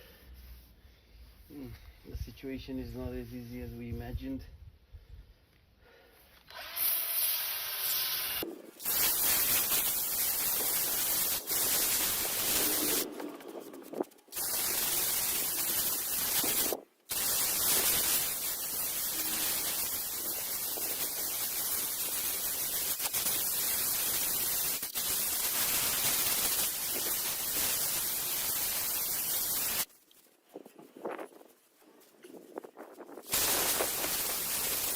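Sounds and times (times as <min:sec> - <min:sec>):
sanding metal: 0:08.8 - 0:24.8.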